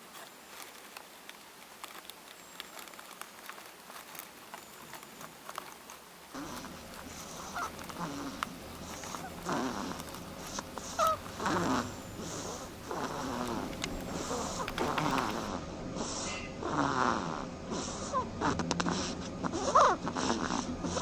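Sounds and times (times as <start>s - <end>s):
dormouse snoring softly: 6.3s - 21.0s.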